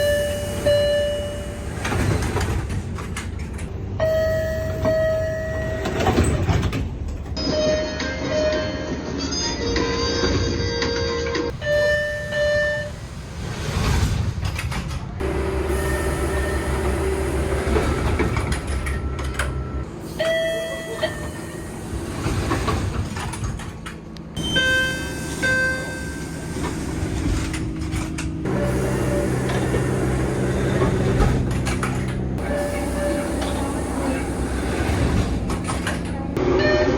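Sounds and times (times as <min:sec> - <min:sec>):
subway door chimes: 0:00.0 - 0:13.8, 0:15.2 - 0:36.9
train motor hum: 0:11.5 - 0:36.4
station noise: 0:24.4 - 0:36.9.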